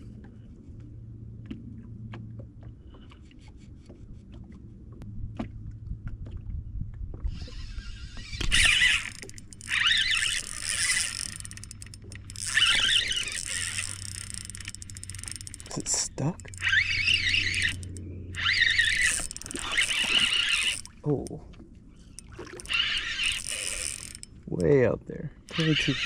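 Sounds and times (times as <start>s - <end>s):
fishing reel cranking: 7.3s - 21.4s, 22.0s - 26.0s
fishing reel clicks: 7.4s - 21.4s, 22.1s - 26.0s.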